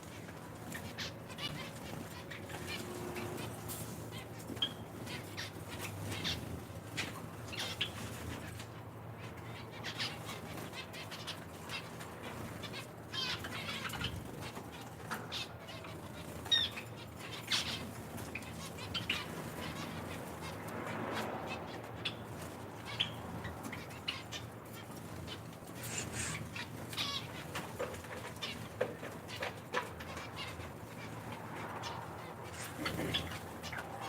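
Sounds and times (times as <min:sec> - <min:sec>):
finches chirping: 0:22.0 - 0:34.0.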